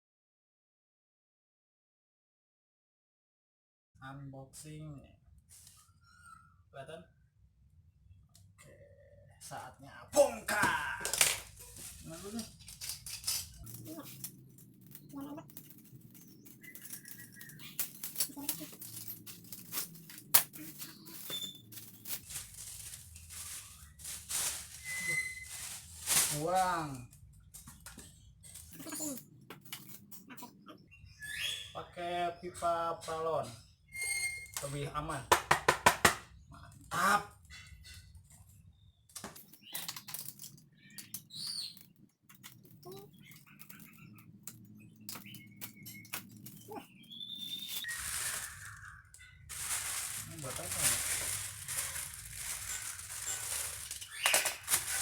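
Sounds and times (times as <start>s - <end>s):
wrapping rustling: 10.2s - 29.3s, 42.4s - 55.0s
clicks and scrapes of package: 11.0s - 26.4s, 41.8s - 55.0s
high chirp-like squeak: 24.8s - 25.8s, 33.9s - 34.7s.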